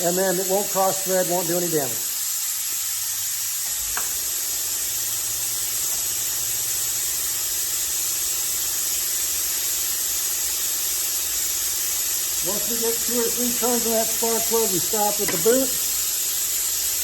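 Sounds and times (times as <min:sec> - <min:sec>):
machine hiss and hum: 0:00.0 - 0:17.0
steady whine: 0:12.4 - 0:16.2.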